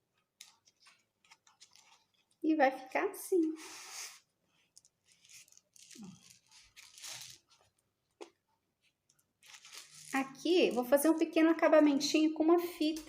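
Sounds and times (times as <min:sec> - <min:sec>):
paper rustling: 0:00.4 - 0:02.4, 0:04.6 - 0:07.8, 0:08.8 - 0:11.3.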